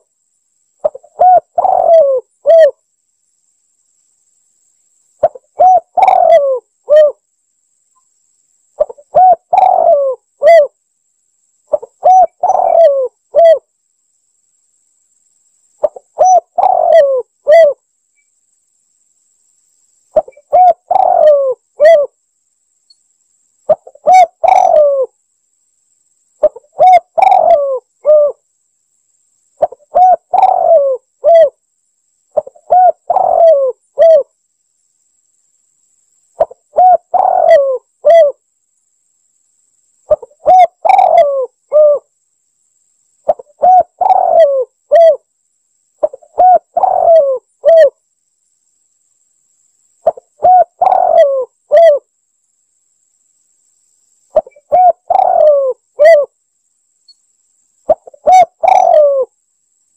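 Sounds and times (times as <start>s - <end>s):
dove cooing: 0.8s - 2.8s, 5.2s - 7.2s, 8.8s - 10.8s, 11.7s - 13.7s, 15.8s - 17.8s, 20.2s - 22.2s, 23.7s - 25.1s, 26.4s - 28.4s, 29.6s - 31.6s, 32.4s - 34.3s, 36.4s - 38.4s, 40.1s - 42.1s, 43.3s - 45.3s, 46.0s - 48.0s, 50.0s - 52.1s, 54.4s - 56.3s, 57.9s - 59.3s.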